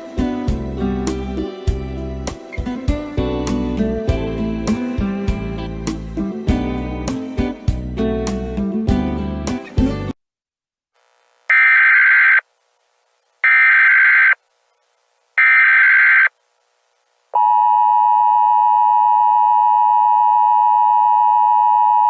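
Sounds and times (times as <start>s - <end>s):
digital data bursts: 11.5s - 12.4s, 13.4s - 14.4s, 15.4s - 16.3s
steady attention tone: 11.5s - 12.6s, 13.4s - 14.5s, 15.4s - 16.4s.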